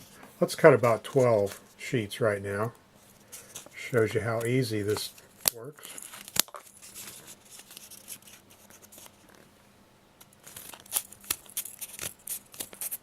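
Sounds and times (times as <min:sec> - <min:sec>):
paper crackling and tearing: 0:10.4 - 0:13.0.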